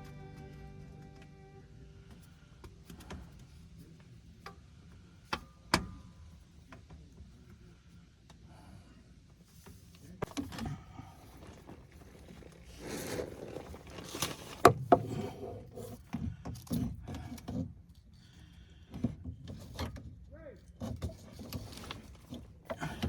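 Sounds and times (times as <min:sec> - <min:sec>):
tank scraping and knocking: 0:10.1 - 0:17.8, 0:20.8 - 0:23.0.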